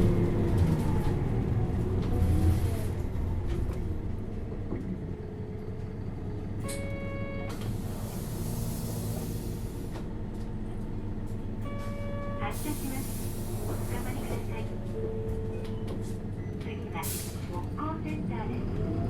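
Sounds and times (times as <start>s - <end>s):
bus diesel engine: 0.0s - 19.0s.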